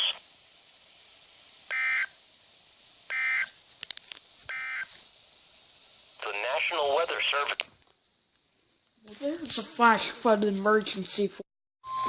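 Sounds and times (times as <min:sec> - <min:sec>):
buzzy electronic data bursts: 0:01.6 - 0:02.2, 0:03.0 - 0:03.6, 0:04.5 - 0:04.9.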